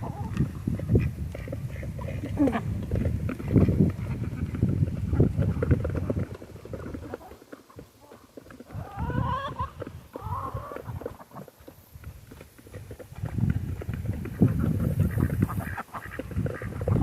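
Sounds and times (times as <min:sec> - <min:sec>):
poultry calling: 0:03.5 - 0:11.5.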